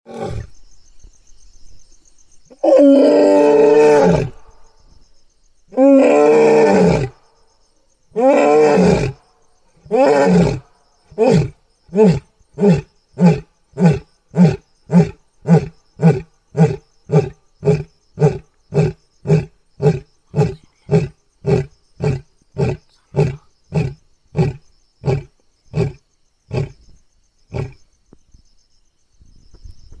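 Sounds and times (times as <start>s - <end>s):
lion grunting roars: 8.2s - 9.2s, 9.9s - 26.8s.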